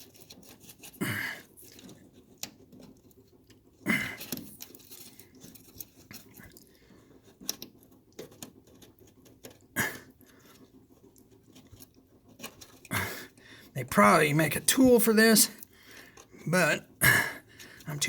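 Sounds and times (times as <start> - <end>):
small metal parts clicking: 0.0 - 13.4.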